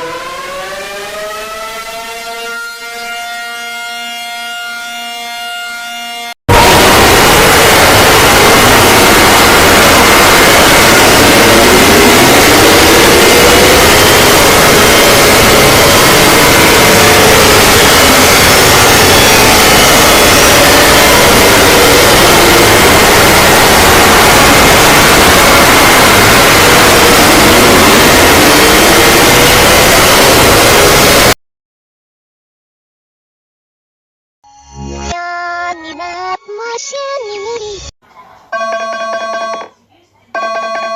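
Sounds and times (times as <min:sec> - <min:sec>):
faint wailing siren: 0:00.0 - 0:31.4
loud harsh static noise: 0:06.5 - 0:31.4.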